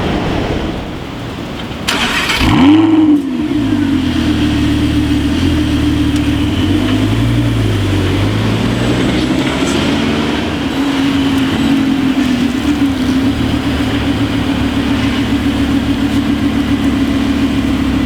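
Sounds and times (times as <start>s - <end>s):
car engine starting and idling: 0.0s - 18.0s.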